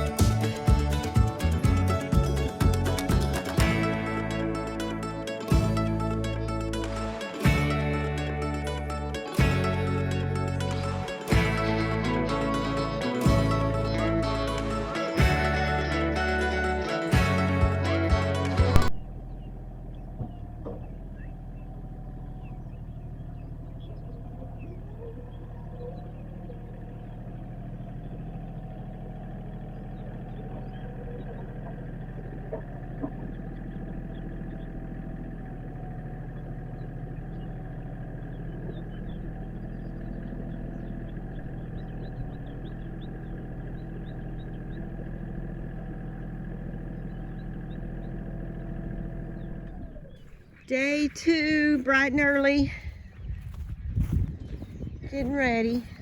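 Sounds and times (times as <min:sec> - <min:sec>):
engine idling: 0:00.0 - 0:56.0
faint knocks: 0:20.1 - 0:21.1.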